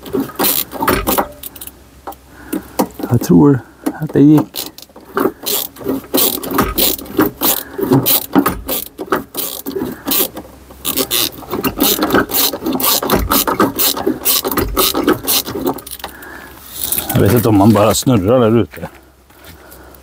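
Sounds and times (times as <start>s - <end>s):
ratchet clicking and scraping: 0.0s - 17.9s.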